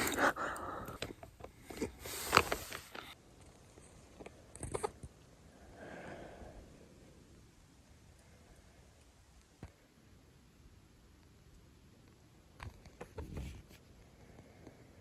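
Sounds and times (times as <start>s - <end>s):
handling clicks and rustles: 0.0s - 5.2s.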